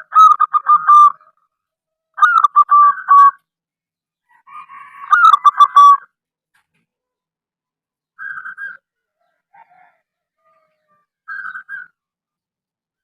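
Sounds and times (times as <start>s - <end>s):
dove cooing: 0.0s - 1.4s, 2.2s - 3.4s.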